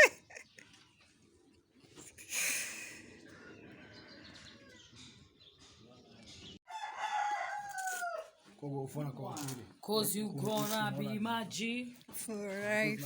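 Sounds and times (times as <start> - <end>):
rooster crowing: 6.7 - 8.4.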